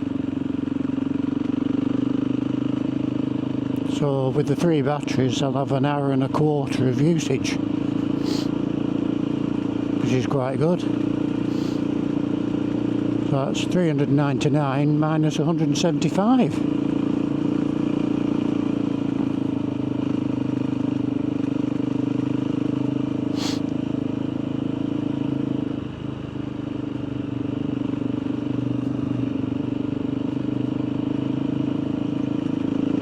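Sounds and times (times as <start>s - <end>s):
motorcycle engine running: 0.0s - 33.0s.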